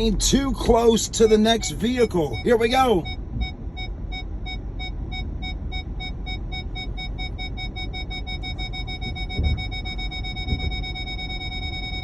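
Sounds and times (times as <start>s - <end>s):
parking sensor beeping: 0.0s - 12.0s
low rumble: 2.4s - 12.0s
low thumps: 9.0s - 11.0s.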